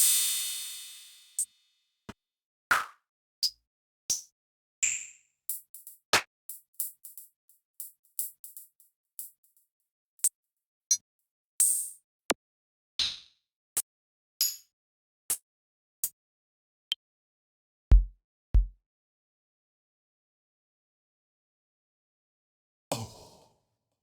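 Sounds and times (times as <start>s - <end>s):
drum and percussion hits: 17.9s - 18.8s.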